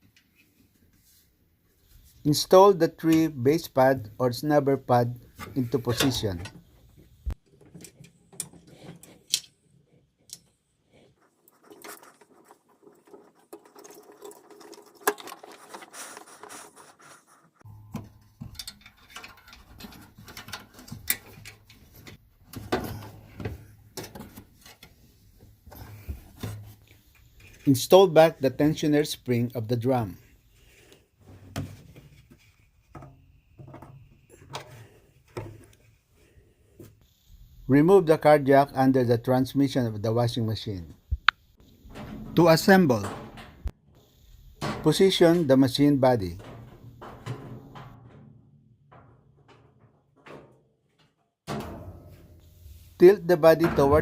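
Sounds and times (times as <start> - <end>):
light knocks and clicks of parts: 5.3 - 10.6, 17.9 - 27.7
scratchy rubbing and scraping: 10.9 - 17.7.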